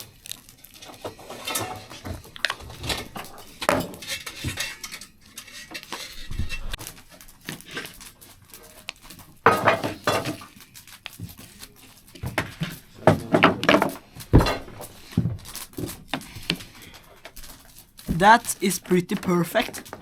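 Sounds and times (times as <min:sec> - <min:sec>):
cutlery scraping on a plate: 0:03.6 - 0:06.8.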